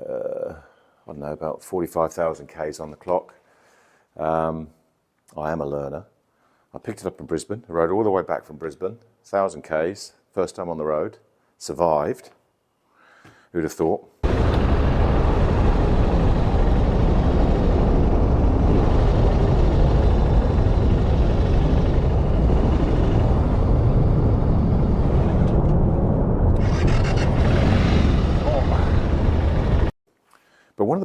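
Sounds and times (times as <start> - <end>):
motorcycle rumble: 14.2 - 29.9
wind rushing over microphone: 14.2 - 29.9.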